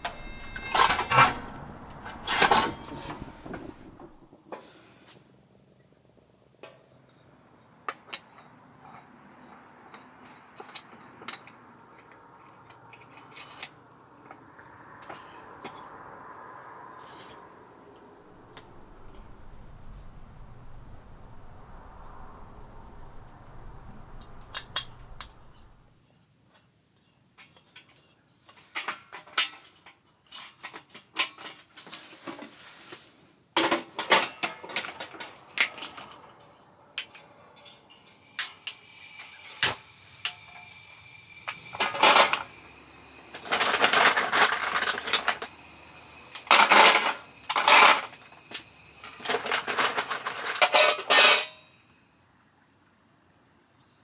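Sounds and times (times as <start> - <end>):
dishes and utensils clattering: 0.0 - 4.3.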